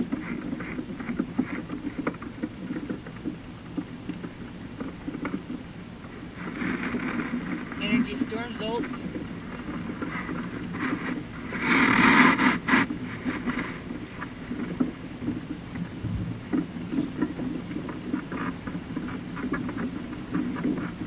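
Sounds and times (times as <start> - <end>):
ocean water sloshing and lapping: 0.0 - 7.8, 9.1 - 21.0.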